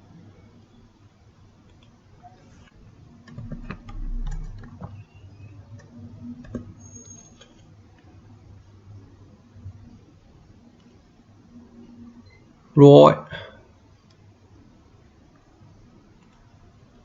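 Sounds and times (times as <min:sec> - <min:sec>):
keyboard and mouse clicks: 0:01.6 - 0:02.0, 0:02.6 - 0:05.0, 0:05.7 - 0:08.1, 0:16.2 - 0:16.5.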